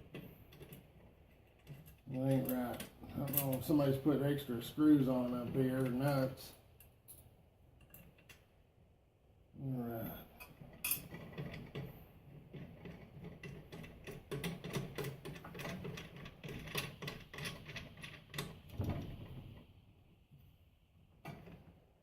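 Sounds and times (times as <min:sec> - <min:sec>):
tools and metal parts rattling: 0:00.0 - 0:08.4, 0:10.4 - 0:19.6.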